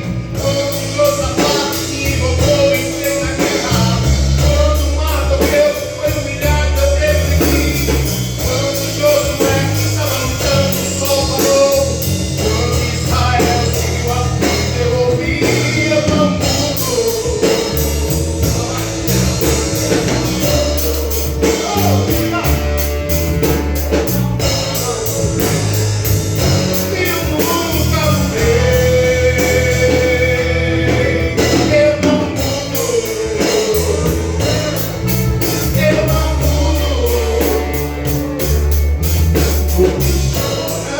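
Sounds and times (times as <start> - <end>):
gospel band playing: 0.0 - 40.9
person singing lead: 0.3 - 40.9.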